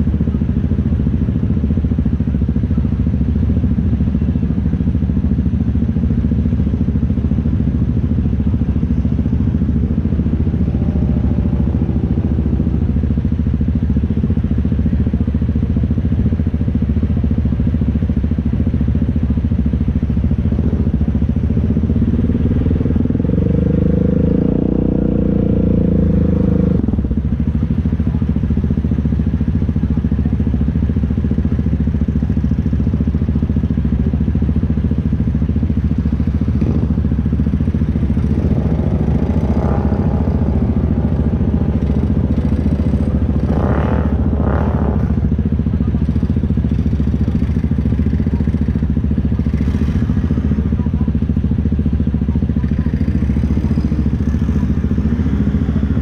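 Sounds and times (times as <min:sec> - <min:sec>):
atv engine running: 0:00.0 - 0:56.0.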